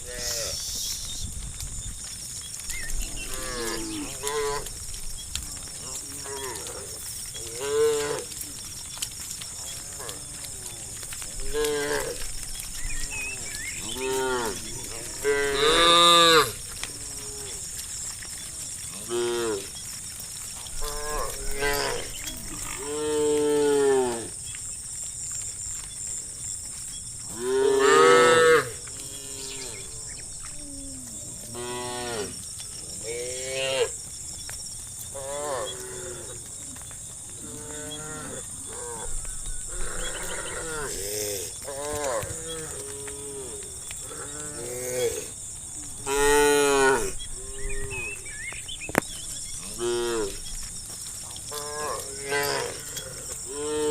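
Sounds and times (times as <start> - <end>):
cows mooing: 3.0 - 4.9, 5.6 - 8.6, 9.4 - 17.9, 18.7 - 19.9, 20.7 - 24.4, 27.3 - 30.2, 35.1 - 36.4, 37.4 - 39.1, 39.7 - 45.3, 46.0 - 48.2, 49.2 - 50.5, 51.4 - 53.9.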